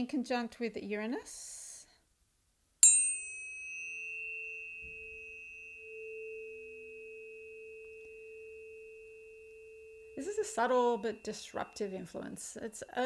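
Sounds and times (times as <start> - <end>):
tuning forks ringing: 2.8 - 13.0.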